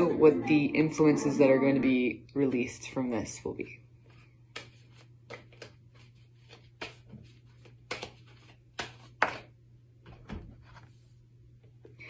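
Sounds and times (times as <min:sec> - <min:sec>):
cards shuffling and snapping: 0:04.0 - 0:09.6.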